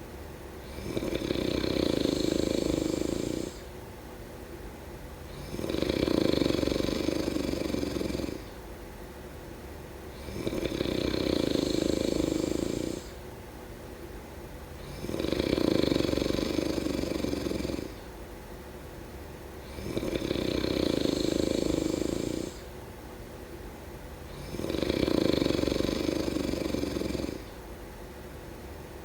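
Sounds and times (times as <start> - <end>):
person snoring: 0.6 - 3.7, 5.3 - 8.5, 10.2 - 13.2, 14.8 - 18.0, 19.7 - 22.7, 24.3 - 27.6.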